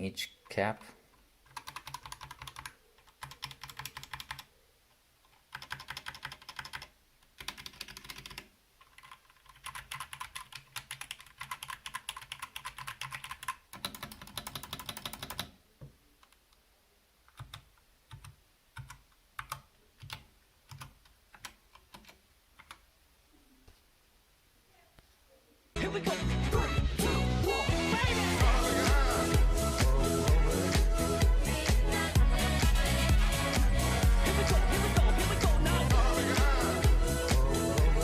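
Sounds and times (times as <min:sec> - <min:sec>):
mechanical keyboard typing: 0:01.5 - 0:04.5, 0:05.3 - 0:15.5, 0:17.3 - 0:22.8.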